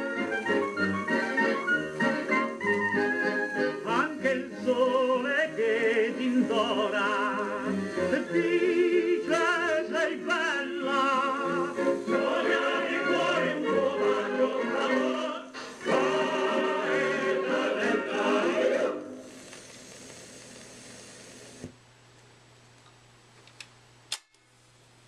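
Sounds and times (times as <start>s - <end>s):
orchestral music on record: 0.0s - 19.2s.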